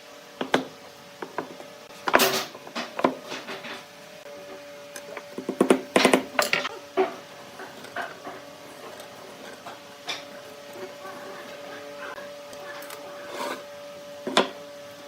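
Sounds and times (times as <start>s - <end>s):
wood and tools knocking: 0.4s - 3.8s, 5.0s - 12.0s, 14.2s - 14.6s.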